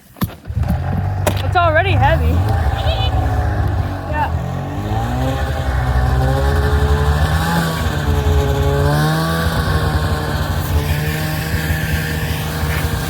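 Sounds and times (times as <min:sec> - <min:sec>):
snowmobile engine running: 0:00.4 - 0:13.0.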